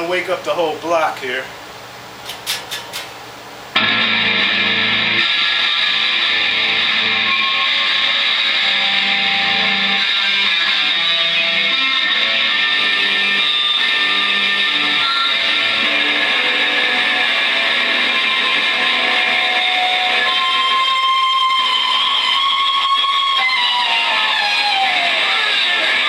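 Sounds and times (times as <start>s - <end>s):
distorted electric guitar: 3.8s - 26.0s.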